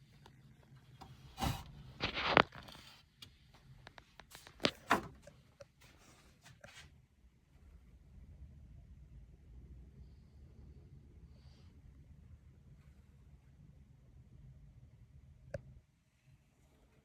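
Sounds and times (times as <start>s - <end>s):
scraping and rustling: 1.3s - 3.1s.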